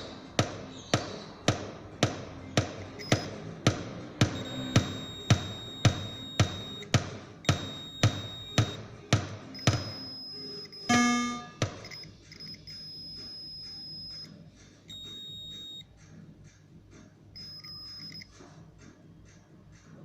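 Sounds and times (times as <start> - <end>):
knock: 0.4 - 10.0, 11.6 - 12.0
faint regular ticking: 2.6 - 20.0
high-pitched beeps: 2.8 - 3.4, 4.3 - 8.8, 9.5 - 15.8, 17.4 - 18.3
pinball machine buzzing tone: 4.3 - 6.9, 9.6 - 14.0.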